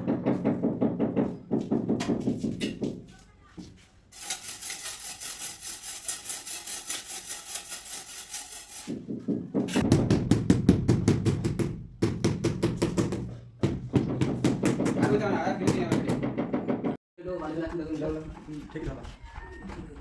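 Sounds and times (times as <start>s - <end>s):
hand tool knocking on tile: 0.0s - 3.0s, 9.1s - 20.0s
hand tool scraping tile: 4.1s - 9.8s, 17.4s - 20.0s.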